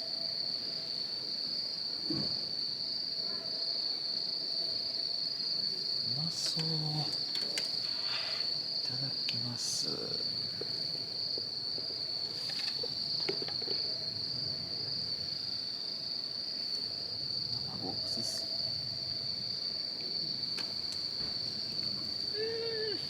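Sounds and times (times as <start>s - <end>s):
insects trilling: 0.0s - 23.0s.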